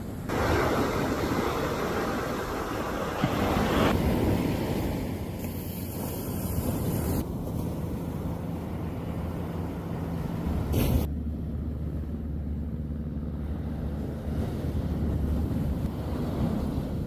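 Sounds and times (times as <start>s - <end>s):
surf: 0.3s - 11.1s
wind buffeting microphone: 13.5s - 17.0s.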